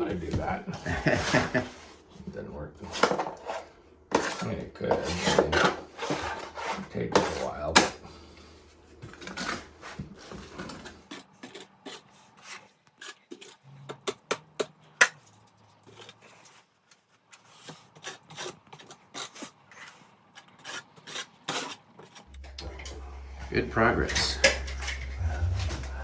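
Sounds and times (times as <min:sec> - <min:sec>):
drywall knife scraping and tapping: 0:02.8 - 0:07.9.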